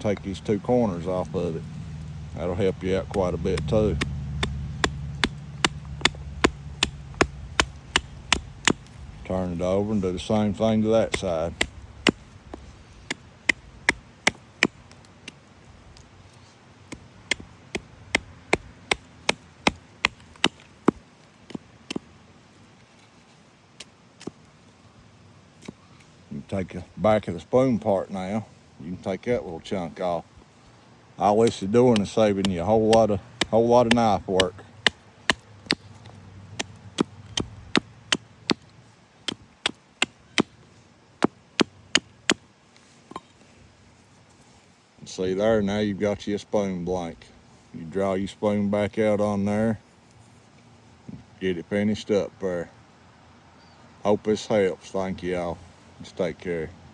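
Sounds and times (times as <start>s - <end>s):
hatchet chopping wood: 3.1s - 9.8s, 10.4s - 15.4s, 16.9s - 22.1s, 31.4s - 38.7s, 39.3s - 40.6s, 41.2s - 42.4s.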